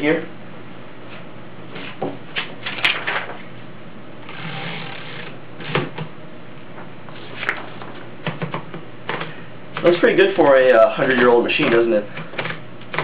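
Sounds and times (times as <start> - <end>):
typewriter clicks and knocks: 12.2 - 13.0.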